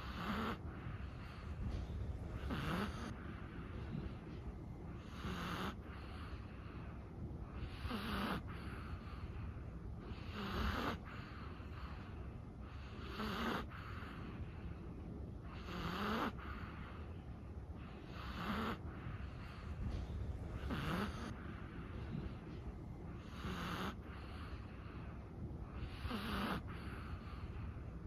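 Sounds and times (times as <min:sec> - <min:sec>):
dog snoring: 0:00.0 - 0:14.6, 0:15.4 - 0:17.2, 0:17.8 - 0:28.0.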